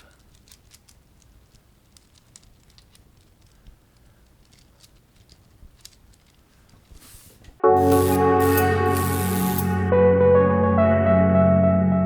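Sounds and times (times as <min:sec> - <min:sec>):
fidget toy clicking: 0:00.0 - 0:07.0
synthesizer music: 0:07.6 - 0:12.0.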